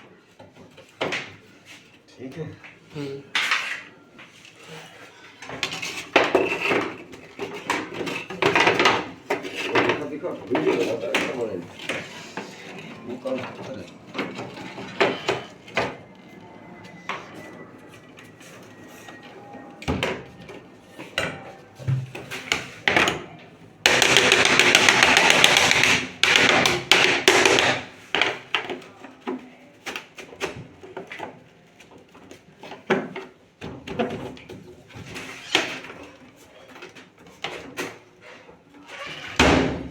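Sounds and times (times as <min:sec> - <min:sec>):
hand tools knocking and clattering: 0:05.5 - 0:12.1, 0:23.8 - 0:28.7.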